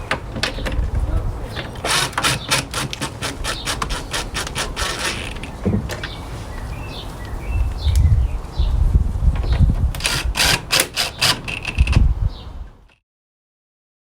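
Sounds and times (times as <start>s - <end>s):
sharp clicks: 1.6s - 6.2s, 10.0s - 12.0s.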